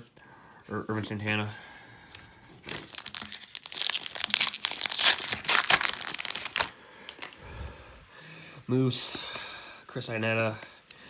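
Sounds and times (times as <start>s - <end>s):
plastic wrapper crinkling: 0.9s - 7.4s.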